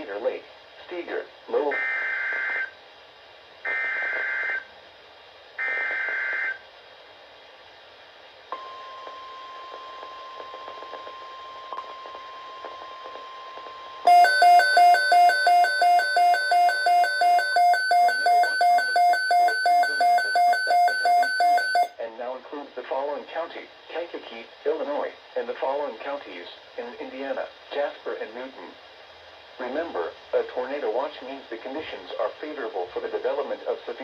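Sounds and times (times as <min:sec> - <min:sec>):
faint steady alert tone: 0:14.1 - 0:21.9
fast-pulsing electronic alarm beep: 0:14.1 - 0:21.9.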